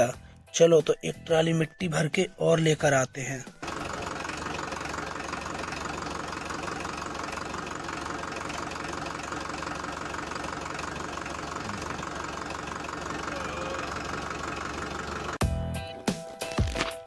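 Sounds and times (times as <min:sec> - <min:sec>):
tractor engine chugging: 0:02.8 - 0:16.9.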